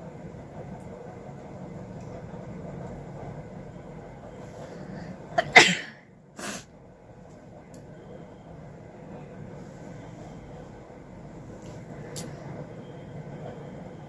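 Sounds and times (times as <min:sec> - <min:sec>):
woman sneezing: 0:05.4 - 0:06.6.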